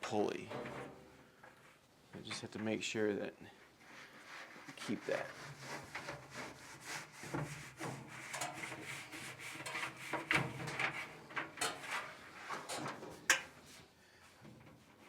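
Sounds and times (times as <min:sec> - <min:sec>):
scraping and rubbing of parts: 0:03.7 - 0:15.0.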